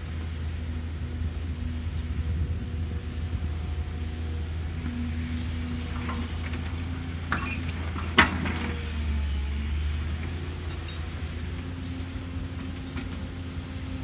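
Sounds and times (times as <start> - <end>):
excavator diesel engine running: 0.0 - 14.0.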